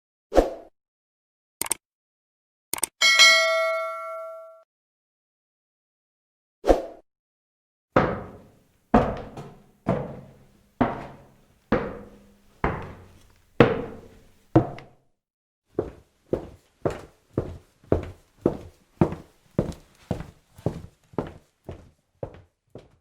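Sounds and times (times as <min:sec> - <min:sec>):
footsteps on hard floor: 0:08.0 - 0:14.9, 0:15.8 - 0:23.0.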